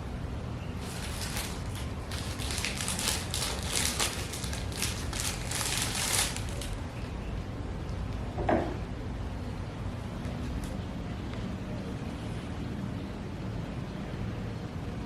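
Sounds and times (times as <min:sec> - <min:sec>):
crinkly crackling and rustling: 0:00.8 - 0:06.9.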